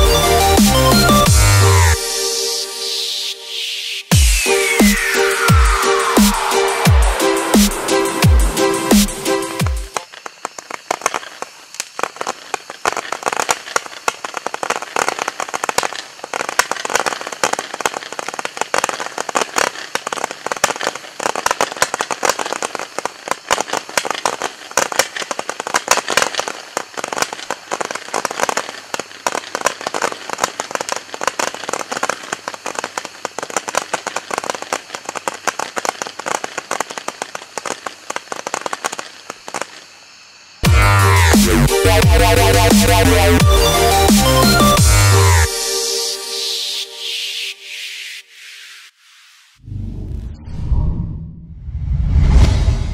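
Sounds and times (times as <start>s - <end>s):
fireworks rattling pops: 6.2s - 40.2s.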